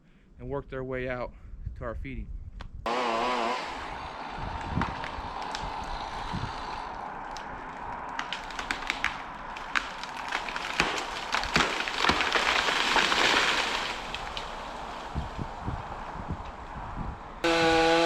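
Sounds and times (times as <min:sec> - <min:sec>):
tree cracking and splintering: 0:02.9 - 0:16.8, 0:17.4 - 0:18.0
branches crashing through brush: 0:03.9 - 0:16.4.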